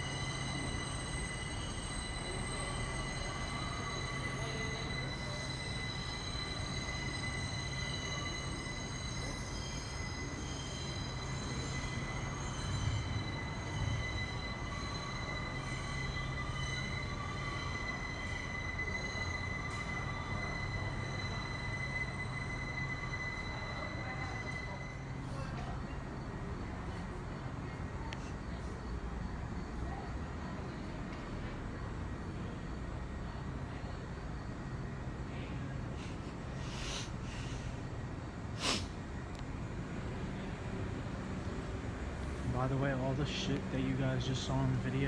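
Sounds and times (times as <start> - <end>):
train electrical hum: 0.0 - 45.0.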